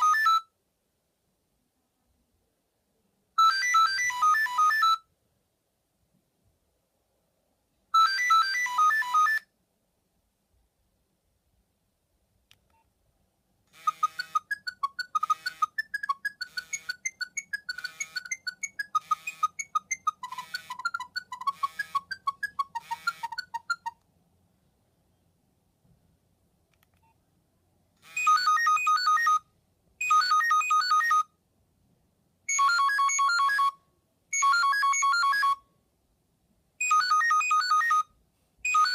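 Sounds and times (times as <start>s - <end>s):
phone ringtone melody: 0.0s - 0.5s, 3.4s - 5.0s, 8.0s - 9.5s, 13.8s - 24.0s, 28.0s - 29.4s, 30.0s - 31.3s, 32.5s - 35.6s, 36.8s - 38.9s.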